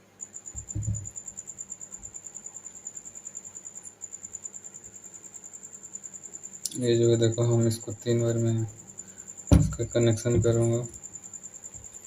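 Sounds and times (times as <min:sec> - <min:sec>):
cricket chirping: 0:00.0 - 0:12.0
dull low knock: 0:00.6 - 0:01.1, 0:09.5 - 0:10.7.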